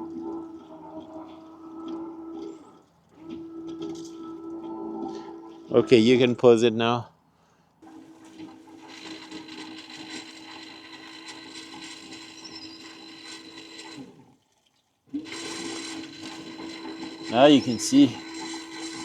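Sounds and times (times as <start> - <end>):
pump running: 0.0 - 6.1, 7.8 - 14.5, 15.1 - 19.0.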